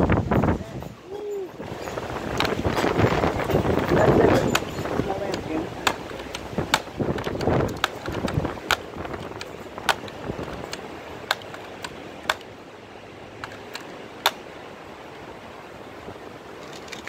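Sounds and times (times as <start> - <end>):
faint outdoor background noise: 0.0 - 17.0
sharp clicks and ticks: 2.3 - 12.5, 13.4 - 14.4.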